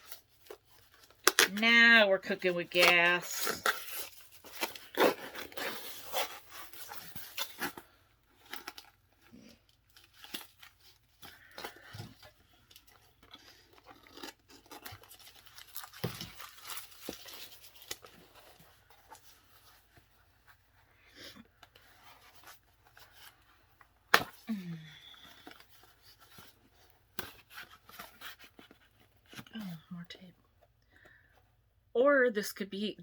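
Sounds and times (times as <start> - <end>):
packing tape tearing: 0.0 - 1.6, 2.8 - 9.0, 9.9 - 18.6.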